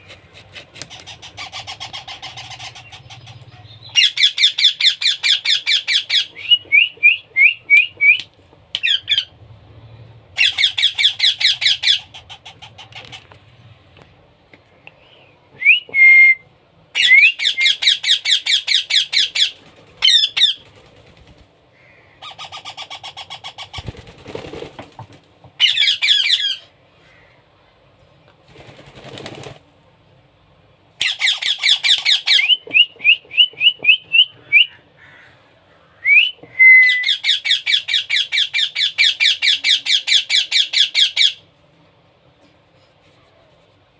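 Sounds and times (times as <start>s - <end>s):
baby parrot squawking: 0.1s - 6.4s, 8.8s - 9.4s, 10.4s - 13.2s, 22.2s - 23.9s, 25.6s - 26.7s, 31.0s - 32.5s, 37.0s - 41.4s.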